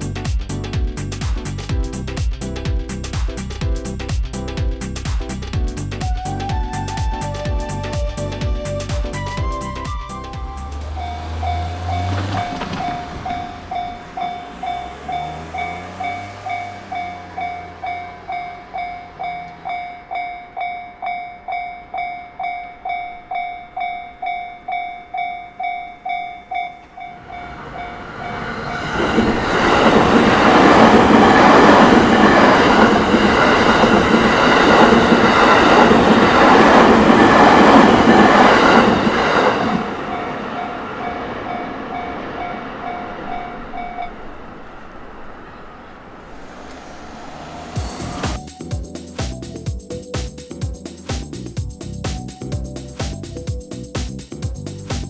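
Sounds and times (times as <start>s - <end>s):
train passing rattling: 0.0s - 55.0s
level-crossing warning bell: 9.3s - 44.4s.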